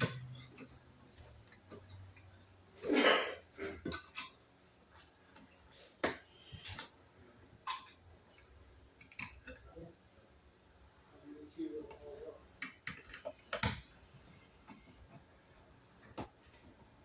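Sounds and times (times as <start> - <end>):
hand tools clicking and tapping: 0.0 - 2.3, 3.7 - 6.9, 7.6 - 9.7, 12.6 - 13.9.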